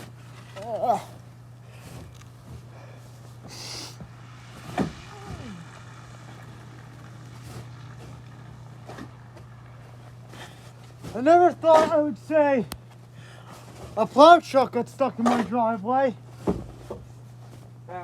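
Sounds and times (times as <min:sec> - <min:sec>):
steady low hum: 0:00.0 - 0:18.0
snow shovel scraping: 0:03.4 - 0:12.5.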